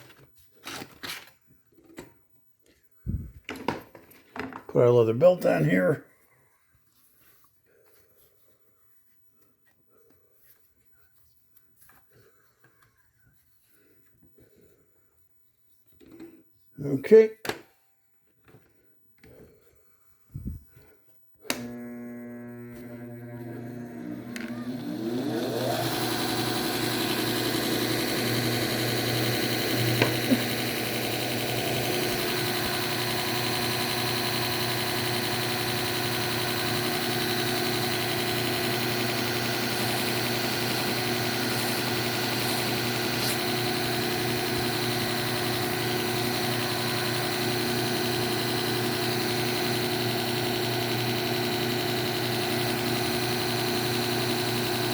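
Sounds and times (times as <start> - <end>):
belt sharpener motor hum: 21.5 - 54.9.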